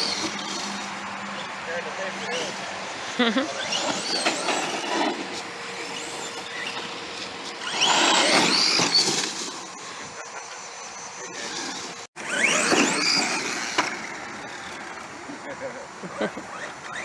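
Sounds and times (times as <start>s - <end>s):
electric motor whining: 0.0s - 15.1s
tyre noise: 3.2s - 9.8s.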